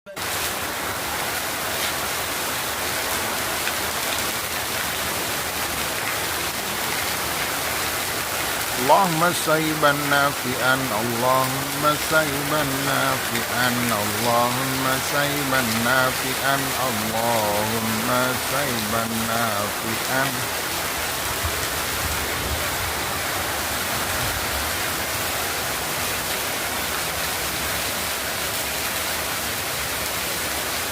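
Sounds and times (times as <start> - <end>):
rain hissing: 0.2 - 30.9
raindrop hits: 8.6 - 23.0.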